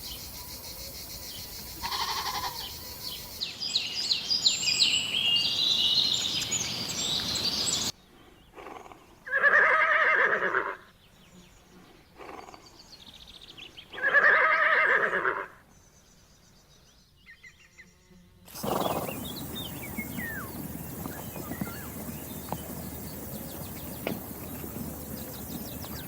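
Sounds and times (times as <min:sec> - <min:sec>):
birds chirping: 0:00.0 - 0:09.2, 0:18.5 - 0:26.0
farm animal wavering calls: 0:18.6 - 0:26.0.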